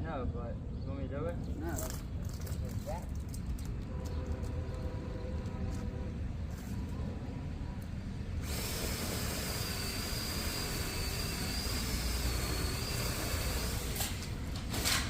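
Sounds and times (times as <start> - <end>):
power saw cutting branch: 8.4 - 15.0.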